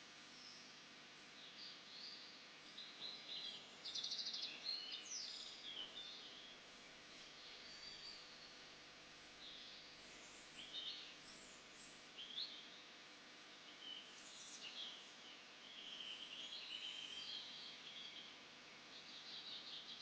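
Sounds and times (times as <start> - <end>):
soft steady hiss: 0.0 - 20.0
small birds chirping: 0.2 - 20.0.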